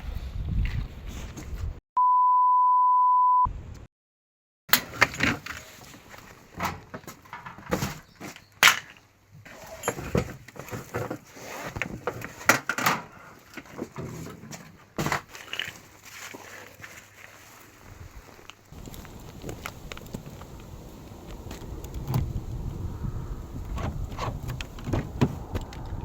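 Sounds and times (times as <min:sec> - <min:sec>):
steady pure beep: 0:02.0 - 0:03.5.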